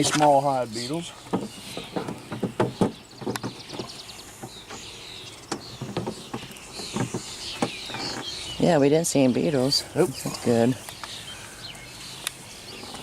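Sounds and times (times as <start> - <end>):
faint bird chirps: 0.7 - 13.0
wooden beehive parts knocking: 1.2 - 4.9, 5.5 - 8.3.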